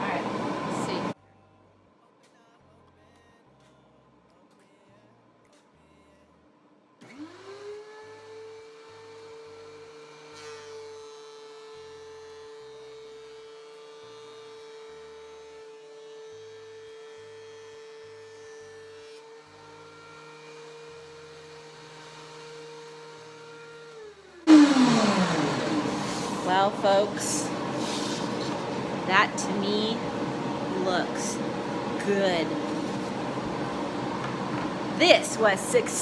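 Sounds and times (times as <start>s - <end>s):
planer cutting a board: 19.5s - 35.5s
planer motor whining: 24.5s - 35.6s.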